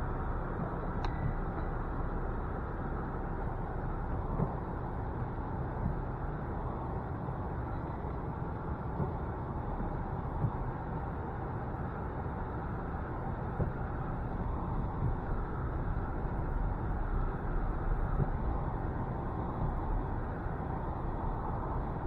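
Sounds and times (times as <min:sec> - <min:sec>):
vehicle rumbling in motion: 0:00.0 - 0:22.0.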